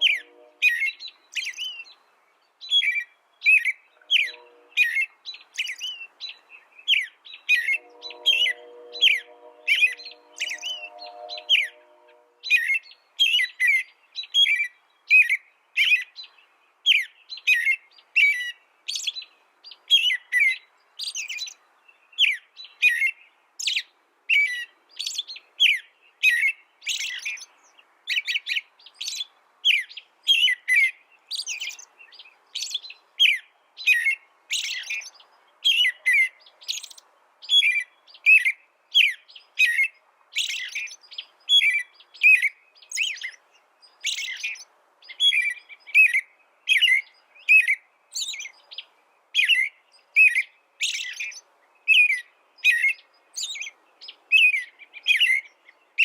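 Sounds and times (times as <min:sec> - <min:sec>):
small bird chirping: 0:02.6 - 0:23.0, 0:23.6 - 0:56.0.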